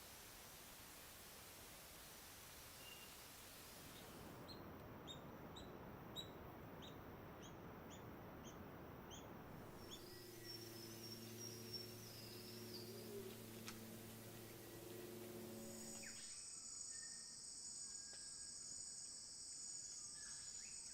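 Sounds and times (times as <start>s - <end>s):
faint bird chirps: 2.7s - 3.3s, 3.9s - 19.0s
steady low hum: 5.9s - 16.3s
high repeated bird calls: 9.1s - 15.0s.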